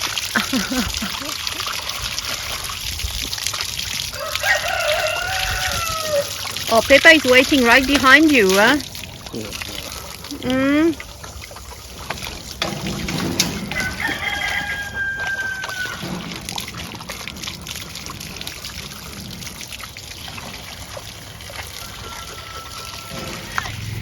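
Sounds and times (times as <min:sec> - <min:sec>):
water running from a hose: 0:00.0 - 0:24.0
rooster crowing: 0:04.1 - 0:06.4, 0:13.7 - 0:16.0, 0:21.7 - 0:23.9.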